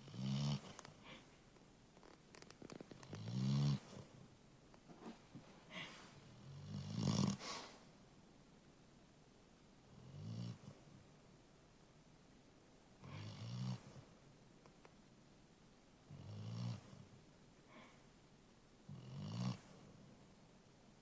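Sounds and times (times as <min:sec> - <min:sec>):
dog snoring: 0:00.0 - 0:01.2, 0:03.0 - 0:04.2, 0:06.3 - 0:07.6, 0:09.9 - 0:10.8, 0:13.0 - 0:14.1, 0:16.1 - 0:17.1, 0:18.9 - 0:20.0.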